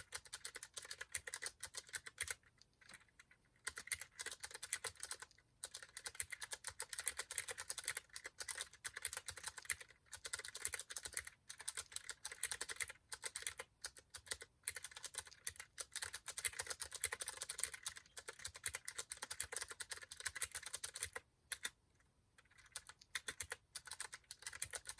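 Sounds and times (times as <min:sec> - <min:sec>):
mechanical keyboard typing clicks: 0:00.0 - 0:21.8, 0:22.4 - 0:24.9.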